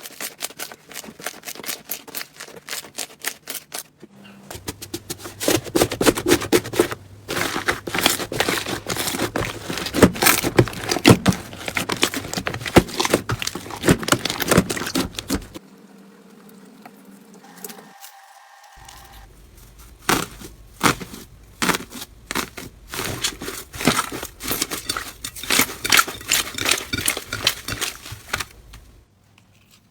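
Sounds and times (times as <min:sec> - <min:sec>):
slime crackling and popping: 0:19.8 - 0:24.4.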